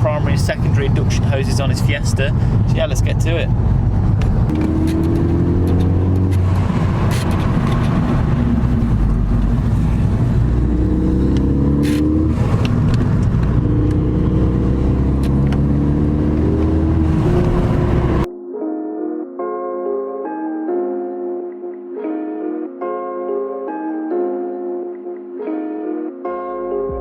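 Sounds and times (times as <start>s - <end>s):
car engine: 0.0s - 18.3s
road noise: 0.0s - 18.3s.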